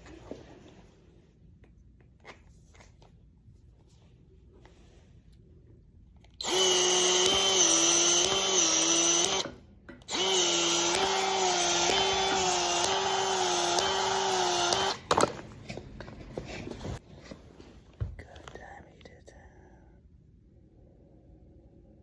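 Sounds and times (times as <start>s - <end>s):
power drill whining: 6.4s - 15.1s.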